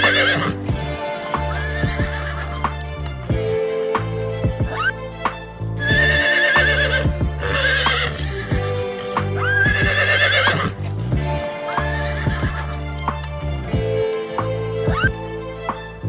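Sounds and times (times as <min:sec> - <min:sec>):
background music with low drone: 0:00.0 - 0:16.0
horse neighing: 0:06.3 - 0:08.2, 0:09.4 - 0:10.6.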